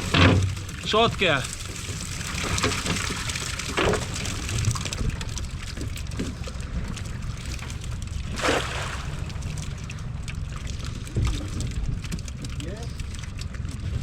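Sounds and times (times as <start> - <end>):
water lapping and sloshing: 0.0 - 14.0
water splash: 7.4 - 14.0.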